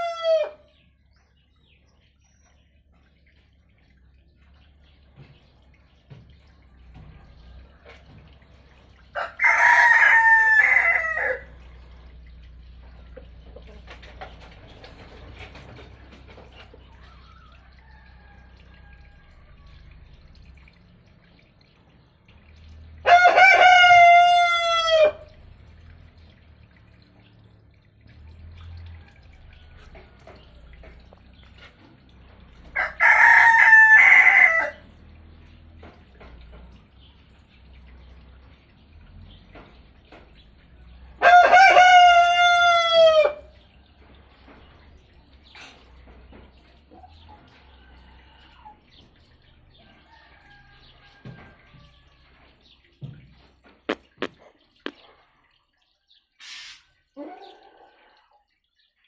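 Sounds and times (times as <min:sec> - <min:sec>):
rooster crowing: 0:00.0 - 0:00.6, 0:09.2 - 0:11.5, 0:23.0 - 0:25.3, 0:32.8 - 0:34.8, 0:41.2 - 0:43.4.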